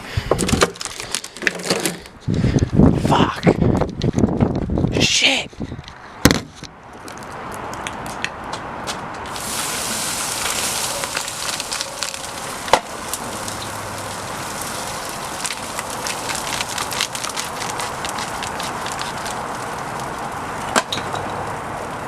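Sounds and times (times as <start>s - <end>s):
fire hissing and crackling: 9.2s - 22.0s.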